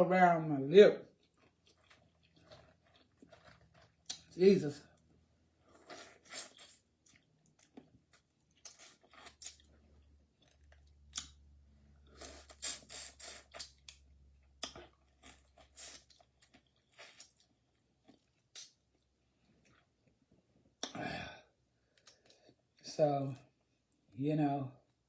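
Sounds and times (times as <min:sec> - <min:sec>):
chewing: 0:01.2 - 0:11.4, 0:12.1 - 0:20.2.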